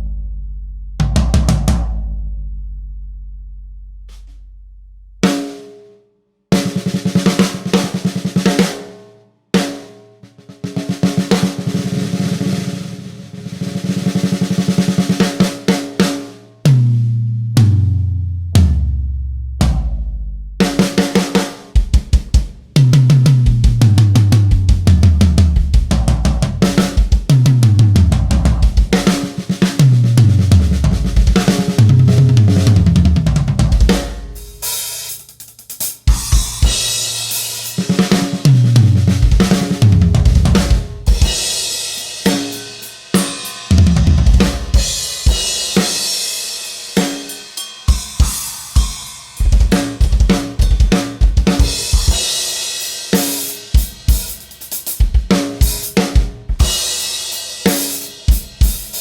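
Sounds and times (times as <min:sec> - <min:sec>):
tom drum fills: 0:01.0 - 0:02.0, 0:19.6 - 0:59.0
cymbals and hi-hat ringing: 0:34.3 - 0:38.7, 0:40.6 - 0:59.0
kick drum hits: 0:49.4 - 0:52.1.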